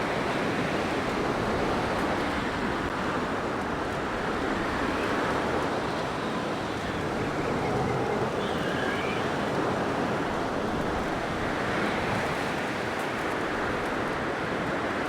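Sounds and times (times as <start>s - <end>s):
faint wind whistling: 4.1s - 12.3s.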